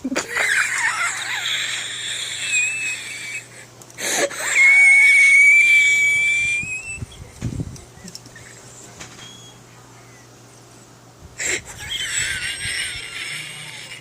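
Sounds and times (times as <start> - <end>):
person wheezing: 11.4 - 11.8.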